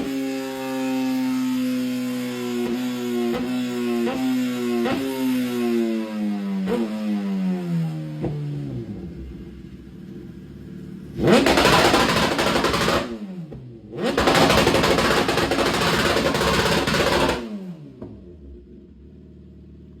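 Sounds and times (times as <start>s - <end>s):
engine revving with crackling exhaust: 0.0s - 20.0s
motorcycle engine idling: 8.2s - 20.0s.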